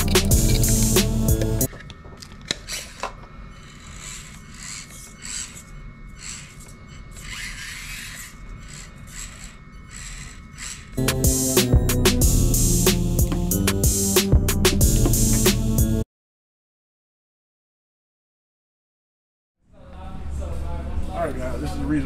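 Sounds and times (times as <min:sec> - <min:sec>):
music: 0:00.0 - 0:01.7, 0:11.0 - 0:16.0
soft scraping and rubbing: 0:02.7 - 0:10.9.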